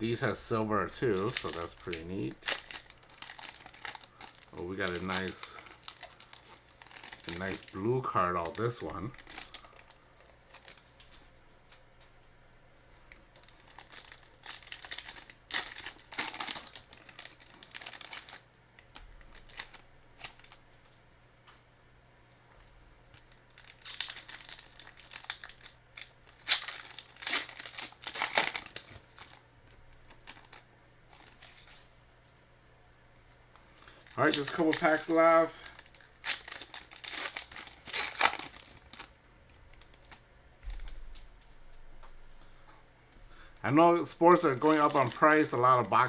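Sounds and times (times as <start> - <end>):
wrappers tearing and crinkling: 0.0 - 11.3, 13.3 - 20.7, 23.2 - 31.9, 33.8 - 41.0, 44.0 - 46.0.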